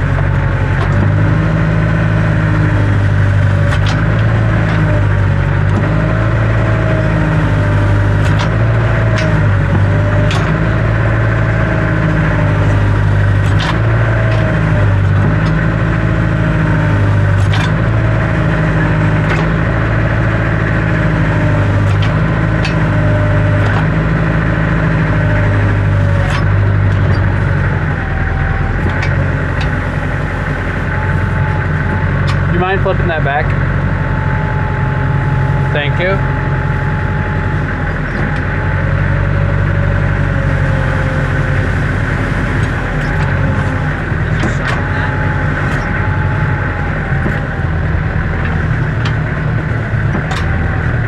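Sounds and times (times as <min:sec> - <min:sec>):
diesel tractor engine idling: 0:00.0 - 0:51.0
sharp clicks and knocks: 0:00.0 - 0:51.0.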